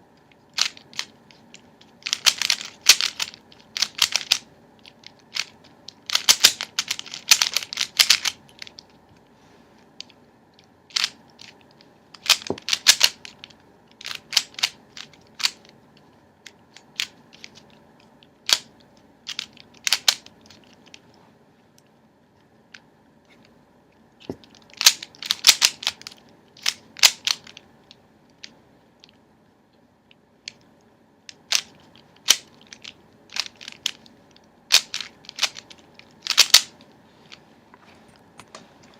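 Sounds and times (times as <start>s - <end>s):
speed cube clicking: 0.3s - 9.0s, 10.9s - 15.8s, 16.4s - 17.8s, 18.4s - 21.0s, 24.2s - 28.5s, 31.3s - 36.8s.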